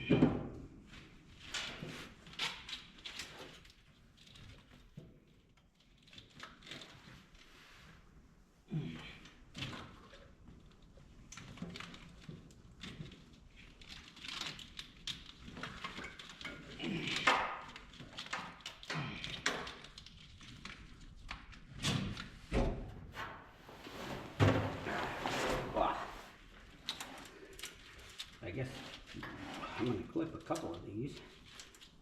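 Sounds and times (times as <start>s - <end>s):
loud thunks: 24.1s - 25.2s.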